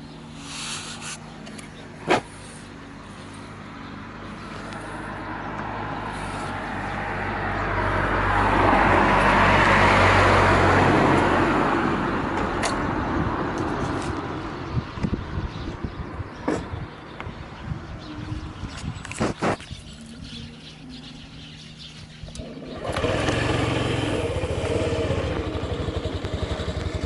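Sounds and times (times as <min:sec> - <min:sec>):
passing vehicle rushing: 0:04.9 - 0:14.7
scooter engine idling: 0:22.3 - 0:27.0.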